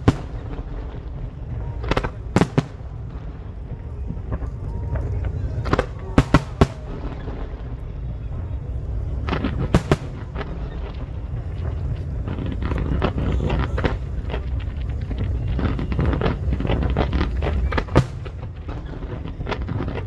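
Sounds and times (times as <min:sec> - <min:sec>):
fireworks bangs: 0:00.0 - 0:20.0
fireworks crackling pops: 0:00.0 - 0:20.0.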